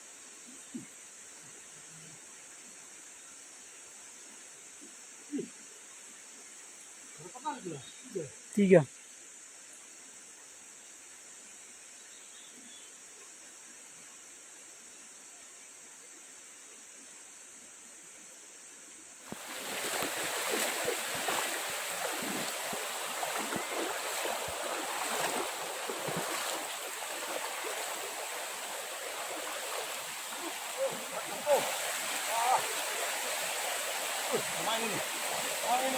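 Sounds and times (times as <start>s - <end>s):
faint hiss with high whine: 0.0s - 35.9s
stream flowing: 19.2s - 35.9s
water splashing: 19.3s - 35.9s.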